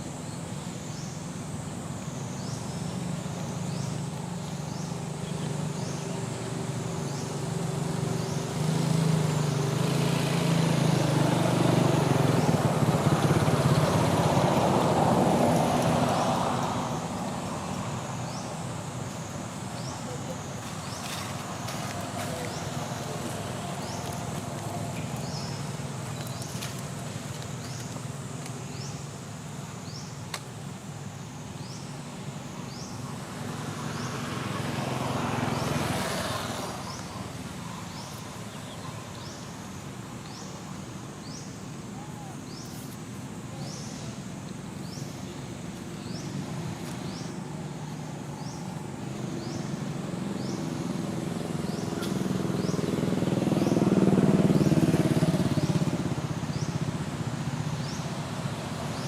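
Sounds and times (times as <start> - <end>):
vehicles passing: 0.0 - 59.0.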